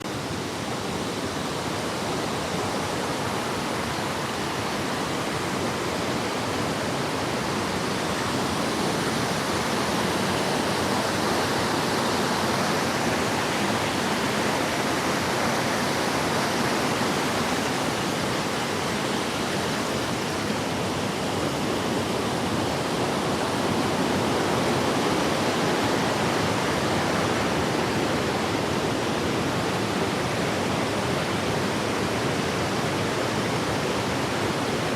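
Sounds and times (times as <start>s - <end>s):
waterfall rushing: 0.0s - 34.9s.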